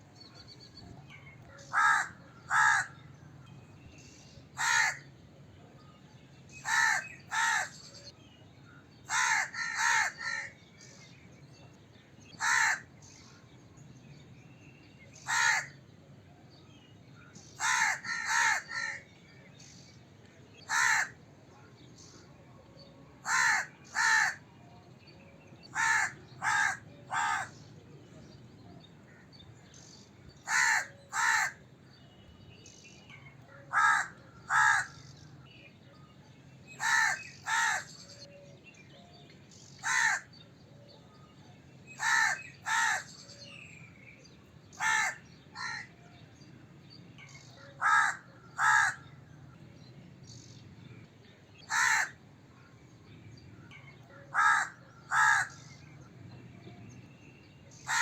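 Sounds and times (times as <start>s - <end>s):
crow cawing: 1.7s - 3.0s, 4.6s - 5.0s, 6.6s - 7.7s, 9.1s - 10.5s, 12.4s - 12.9s, 15.3s - 15.8s, 17.6s - 19.0s, 20.7s - 21.2s, 23.2s - 24.4s, 25.7s - 27.5s, 30.5s - 31.6s, 33.7s - 35.0s, 36.8s - 37.9s, 39.8s - 40.3s, 42.0s - 43.1s, 44.8s - 45.9s, 47.8s - 49.0s, 51.7s - 52.2s, 54.3s - 55.6s.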